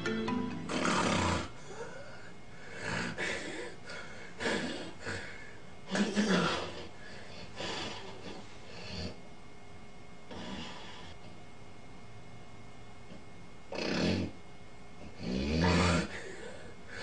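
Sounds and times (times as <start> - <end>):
person snoring: 0.6 - 3.8, 4.4 - 9.2, 10.3 - 11.2, 13.7 - 14.4, 15.2 - 17.0.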